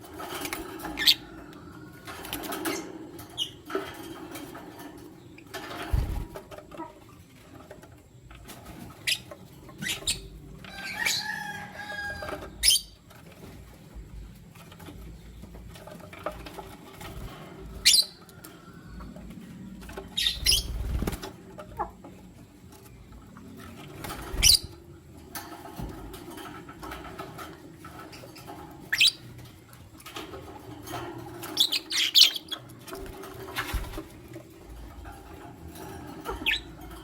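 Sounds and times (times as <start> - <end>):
lovebirds chirping: 20.1 - 21.2, 31.5 - 32.8.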